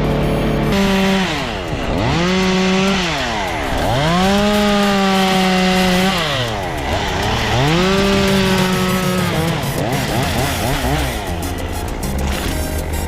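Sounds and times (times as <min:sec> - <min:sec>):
chainsaw revving: 0:00.0 - 0:13.0.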